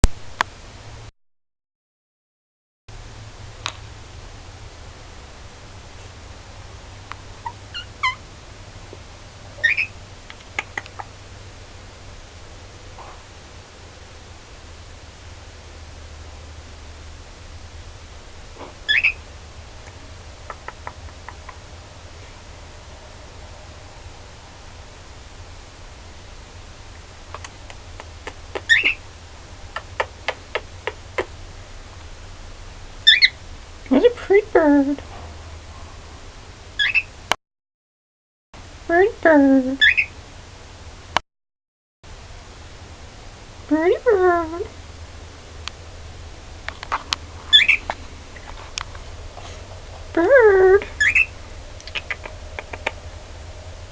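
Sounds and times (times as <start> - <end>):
bird chirping: 7.4 - 8.2, 9.6 - 11.2, 18.9 - 19.3, 28.5 - 29.0, 33.0 - 33.4, 36.8 - 37.1, 39.8 - 40.2, 47.5 - 48.0, 50.8 - 53.1
loud bird call: 9.6 - 10.0, 18.9 - 19.3, 28.5 - 29.0, 36.8 - 37.1, 39.8 - 40.2, 47.5 - 47.9, 50.9 - 52.9
sharp clicks: 10.3 - 11.1, 51.8 - 53.0.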